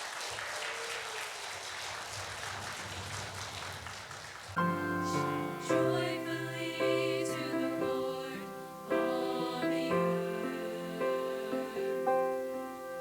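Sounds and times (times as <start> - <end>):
congregation applauding: 0.0 - 6.7
piano playing sustained chords: 4.6 - 13.0.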